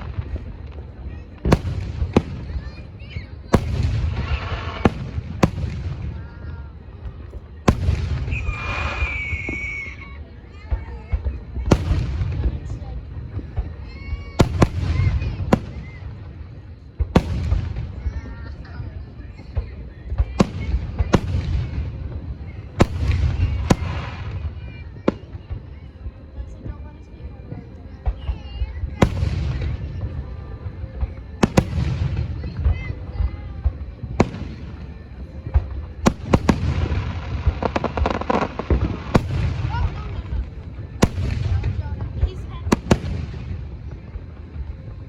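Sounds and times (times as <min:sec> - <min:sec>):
firework booms: 0:00.0 - 0:10.0, 0:10.6 - 0:25.7, 0:28.0 - 0:45.0
high steady whistle: 0:08.2 - 0:10.2.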